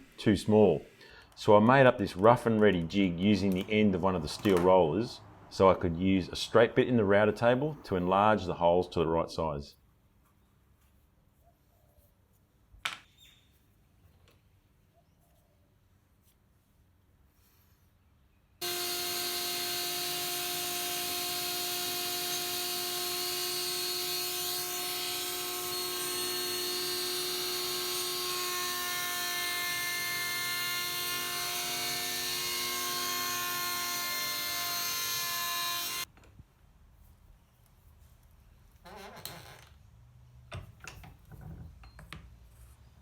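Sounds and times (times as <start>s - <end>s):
router motor whine with cutting: 18.6s - 36.1s.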